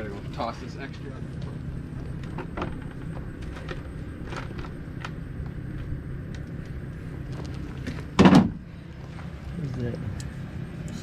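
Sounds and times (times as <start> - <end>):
machinery engine rumble: 0.0 - 11.0
loud short thump: 8.2 - 8.6.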